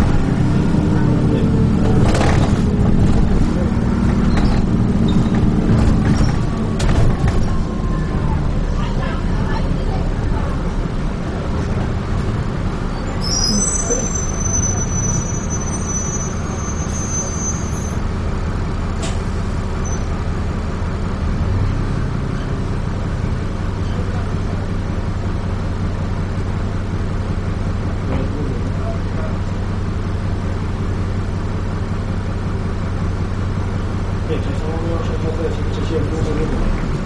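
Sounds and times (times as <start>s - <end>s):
bus engine drone: 0.0s - 37.0s
high-pitched squeal: 12.9s - 18.0s.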